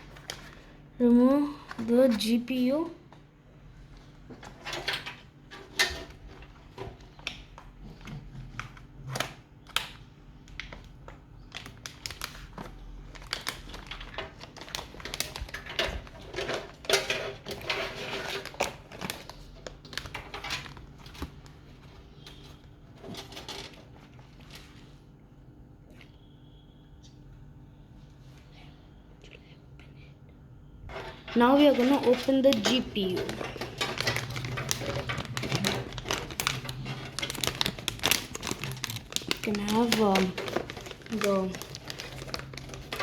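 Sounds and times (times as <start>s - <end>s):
rustling: 30.9s - 43.0s.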